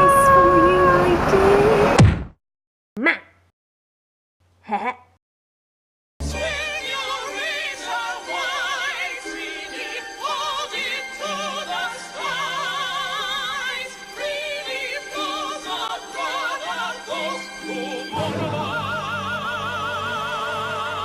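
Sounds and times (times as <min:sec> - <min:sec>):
music: 0:06.2 - 0:21.0
operatic singing with vibrato: 0:06.2 - 0:21.0.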